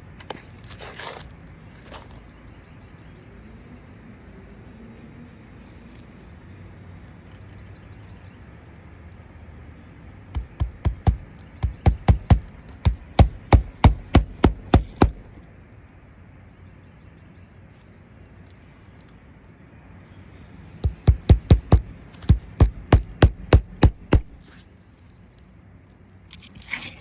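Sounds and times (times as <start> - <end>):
hammer striking nails: 10.4 - 15.3, 20.8 - 24.4.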